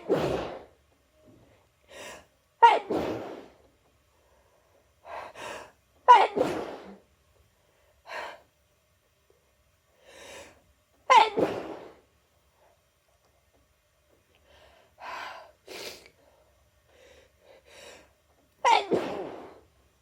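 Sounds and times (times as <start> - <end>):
person sneezing: 0.0 - 0.7, 2.6 - 3.6, 5.4 - 7.0, 11.1 - 12.0, 15.7 - 16.1, 18.6 - 19.6.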